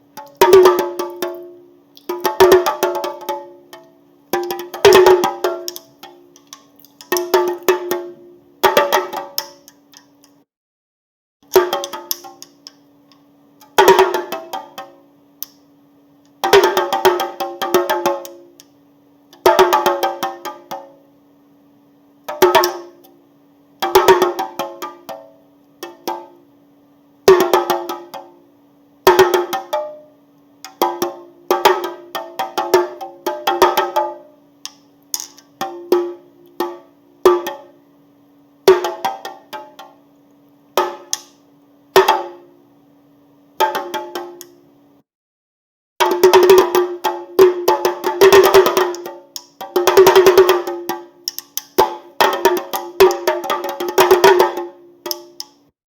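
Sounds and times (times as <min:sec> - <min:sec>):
faint steady hum: 0:00.0 - 0:10.5, 0:11.4 - 0:45.0, 0:46.0 - 0:55.7
drum beats in quick bursts: 0:00.2 - 0:09.6, 0:11.5 - 0:12.6, 0:13.7 - 0:15.0, 0:16.4 - 0:18.5, 0:22.3 - 0:23.0, 0:23.8 - 0:26.4, 0:27.3 - 0:28.4, 0:29.0 - 0:30.0, 0:30.7 - 0:34.3, 0:35.2 - 0:37.8, 0:38.7 - 0:40.0, 0:40.8 - 0:41.4, 0:42.0 - 0:42.5, 0:43.6 - 0:44.4, 0:46.0 - 0:55.5.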